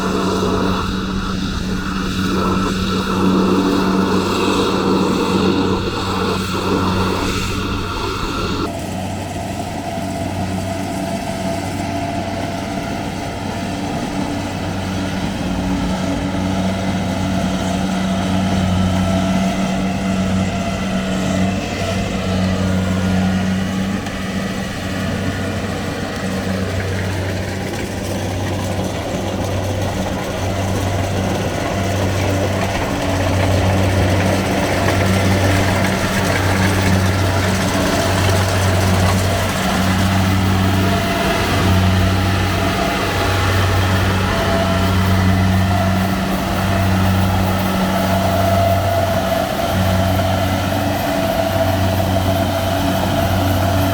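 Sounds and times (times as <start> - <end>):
harvester engine humming: 0.0 - 53.9.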